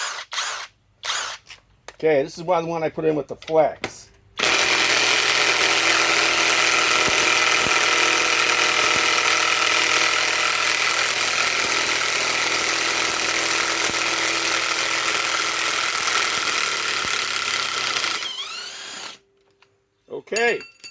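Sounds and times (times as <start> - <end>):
impact wrench hammering: 4.4 - 19.2.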